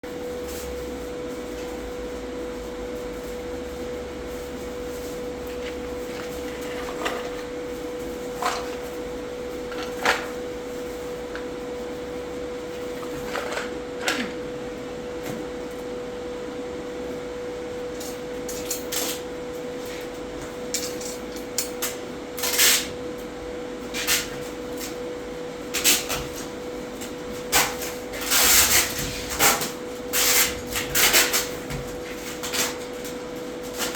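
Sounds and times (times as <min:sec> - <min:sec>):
steady hum: 0:00.0 - 0:33.9
clicks and scrapes of parts handled: 0:05.5 - 0:07.5.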